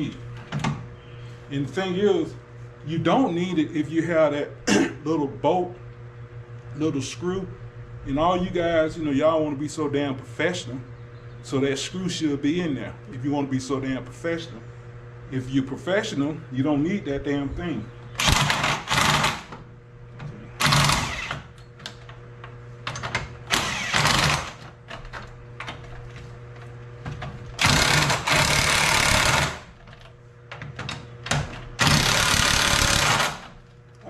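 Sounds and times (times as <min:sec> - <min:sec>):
power tool driving lug bolts: 0:18.2 - 0:19.6, 0:20.6 - 0:22.0, 0:22.9 - 0:25.8, 0:27.6 - 0:33.6.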